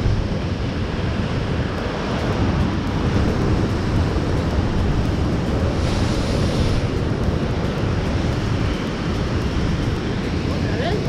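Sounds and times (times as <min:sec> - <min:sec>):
wind buffeting microphone: 0:00.0 - 0:11.0
hiss of washing water: 0:04.7 - 0:08.8.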